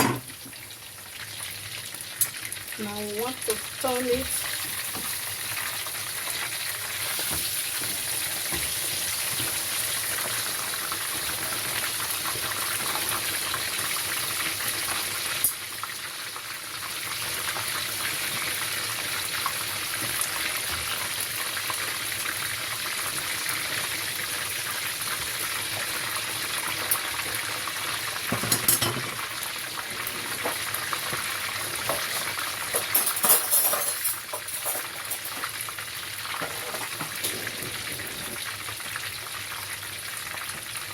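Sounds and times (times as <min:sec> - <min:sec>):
fish sizzling in hot oil: 0:00.0 - 0:40.9
clatters against pan: 0:28.3 - 0:29.2, 0:31.8 - 0:35.6.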